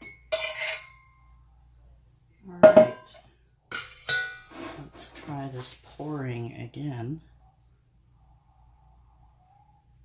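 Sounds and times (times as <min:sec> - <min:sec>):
metal pot and utensil clinking: 0:00.0 - 0:01.3, 0:02.6 - 0:05.2.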